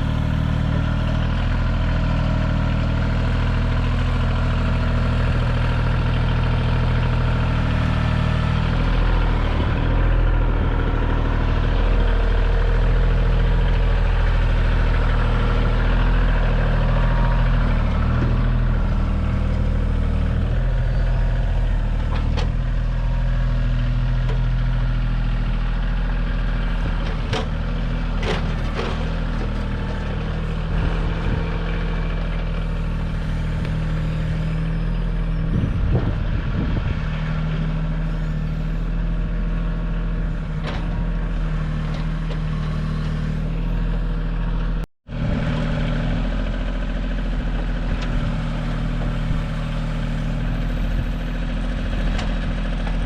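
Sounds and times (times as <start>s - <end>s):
tractor diesel engine running: 0.0s - 53.0s.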